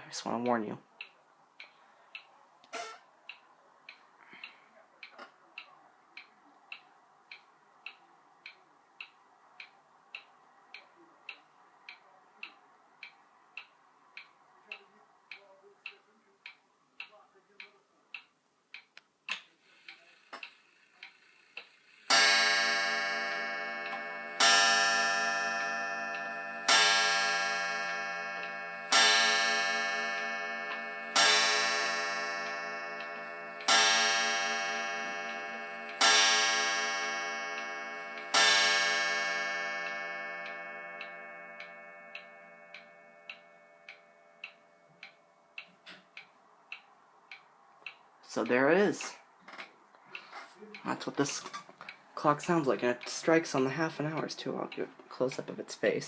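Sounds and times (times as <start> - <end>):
loud clock ticking: 19.8 - 49.1
clock striking: 20.4 - 45.2.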